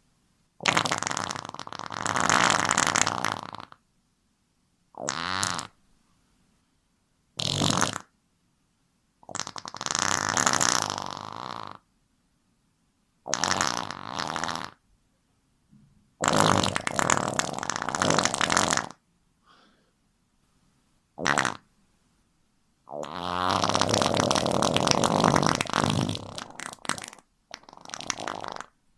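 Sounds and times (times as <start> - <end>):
rasping farts: 0.6 - 3.8, 5.0 - 5.8, 7.4 - 8.1, 9.2 - 11.8, 13.3 - 14.8, 16.2 - 19.0, 21.2 - 21.7, 22.9 - 28.8.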